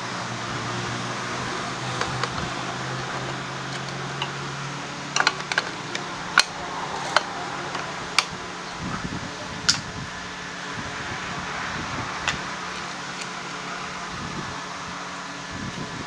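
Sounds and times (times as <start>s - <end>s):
steady fan hum: 0.0s - 16.0s
sharp clicks and taps: 5.2s - 8.4s.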